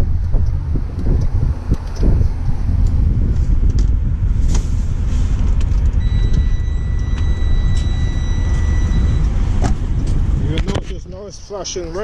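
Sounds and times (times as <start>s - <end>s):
thin high whine: 6.0s - 9.3s.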